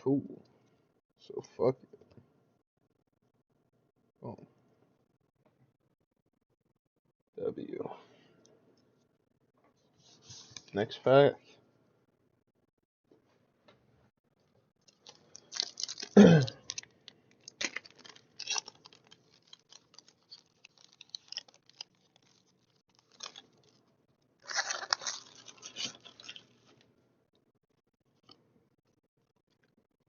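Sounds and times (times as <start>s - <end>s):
foil wrapper crinkling and tearing: 14.8s - 26.8s.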